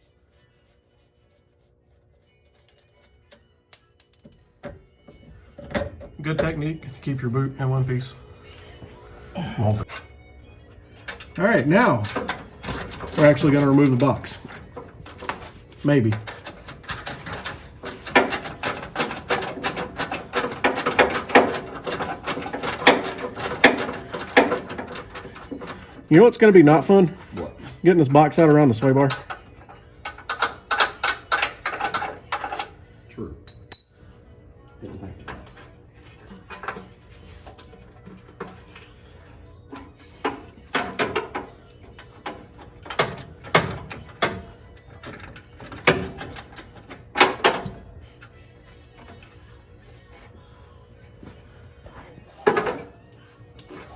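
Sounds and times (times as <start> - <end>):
metal tools knocking and ringing: 33.7 - 34.0.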